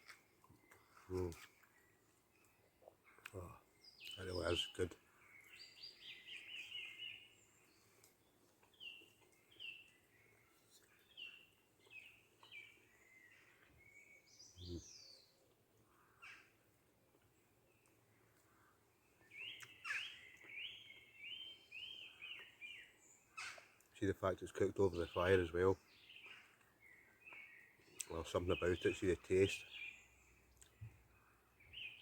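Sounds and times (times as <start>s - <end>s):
small songbird singing: 0.6s - 16.5s, 17.7s - 23.9s, 24.6s - 32.0s.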